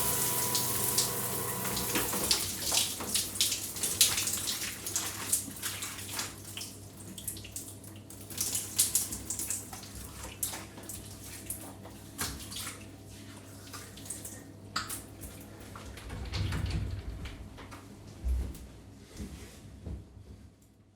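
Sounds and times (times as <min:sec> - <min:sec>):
electric shower hum: 0:00.0 - 0:04.7
shower water splashing: 0:00.0 - 0:11.6.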